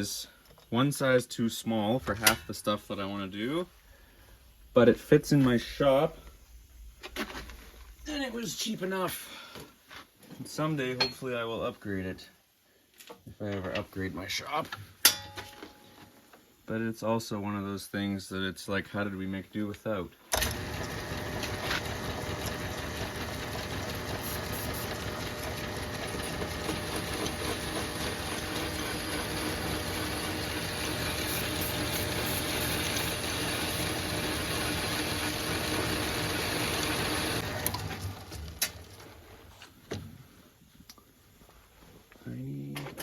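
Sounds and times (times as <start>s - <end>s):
metal lathe whirring: 20.4s - 37.9s.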